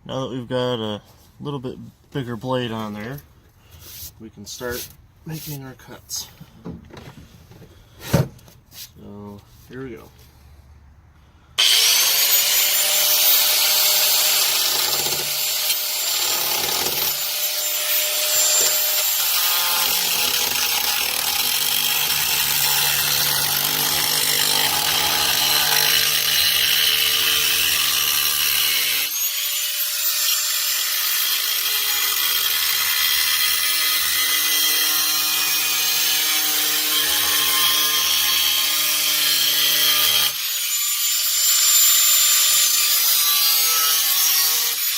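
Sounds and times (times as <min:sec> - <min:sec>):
power saw cutting sheet metal: 0:11.6 - 0:44.9.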